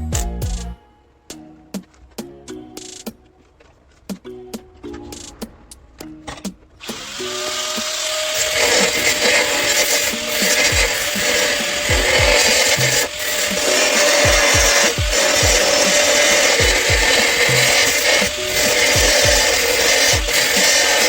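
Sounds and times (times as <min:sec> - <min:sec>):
low drum beats of background music: 0:00.0 - 0:03.3, 0:10.0 - 0:20.4
power tool sanding sheet metal: 0:06.8 - 0:21.0.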